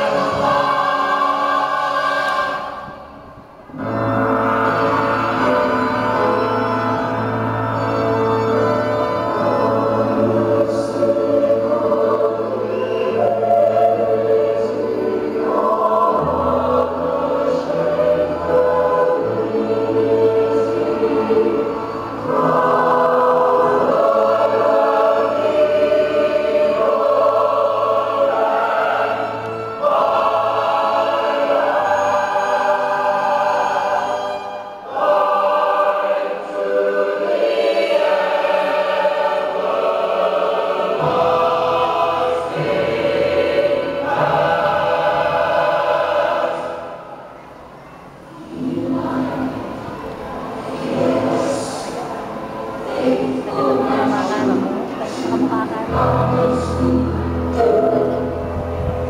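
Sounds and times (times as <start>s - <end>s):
musical accompaniment with bass line: 0.0s - 34.8s, 48.5s - 59.0s
children's choir singing: 0.0s - 59.0s.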